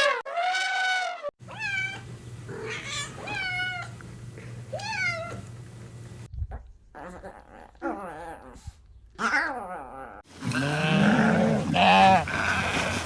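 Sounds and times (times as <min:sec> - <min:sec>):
goat bleating: 0:10.5 - 0:12.3.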